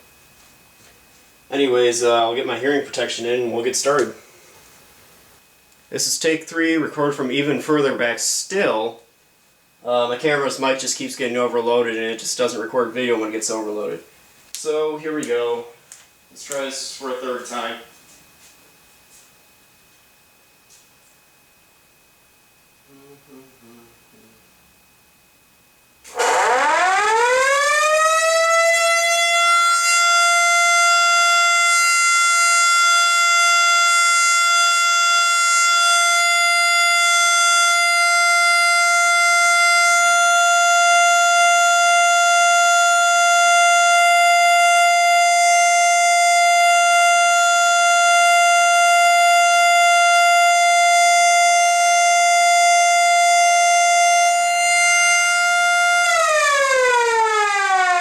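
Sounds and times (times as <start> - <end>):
siren rising to steady tone: 26.0 - 58.0.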